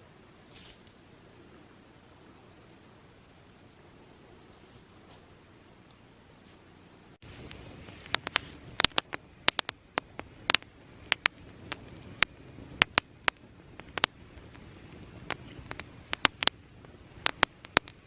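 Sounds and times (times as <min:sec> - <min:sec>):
faint steady hiss: 0:00.0 - 0:18.0
irregular sharp ticks and taps: 0:07.5 - 0:18.0.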